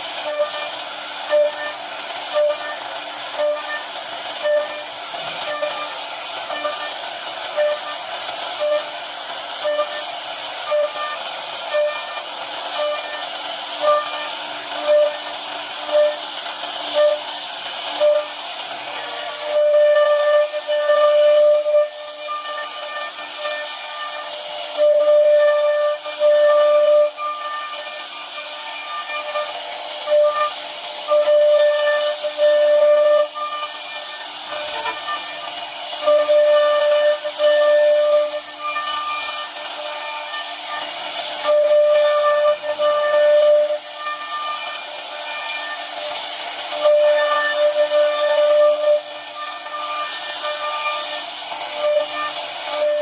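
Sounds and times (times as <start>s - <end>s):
short pitched whine: 0.0s - 29.5s
cnc router cutting: 0.0s - 53.0s.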